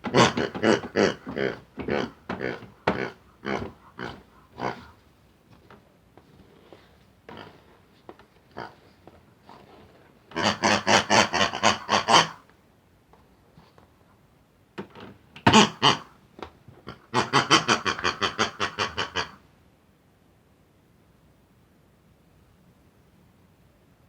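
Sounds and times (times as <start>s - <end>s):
pig grunting and oinking: 0.0s - 5.0s, 7.3s - 7.7s, 8.5s - 8.9s, 10.3s - 12.4s, 15.5s - 16.2s, 16.8s - 19.4s.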